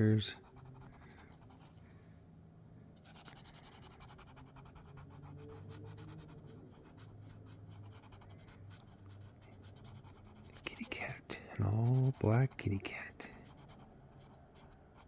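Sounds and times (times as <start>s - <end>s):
marker scratching on paper: 3.0s - 15.0s.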